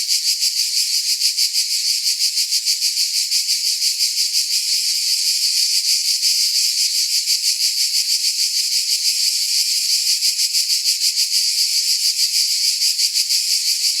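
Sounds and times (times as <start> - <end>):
cicada buzzing: 0.0 - 13.9.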